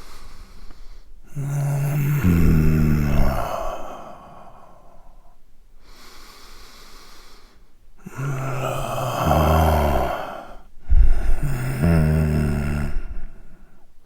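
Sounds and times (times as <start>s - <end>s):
man's laboured breathing: 0.0s - 14.0s
low voiced groan: 1.3s - 5.0s, 8.0s - 13.6s.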